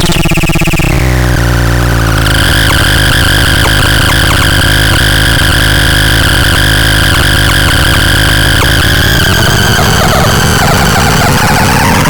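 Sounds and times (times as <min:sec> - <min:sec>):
harsh wall of noise: 0:00.0 - 0:12.0
evenly spaced clicks: 0:02.2 - 0:12.0
high whistling tones: 0:02.2 - 0:12.0.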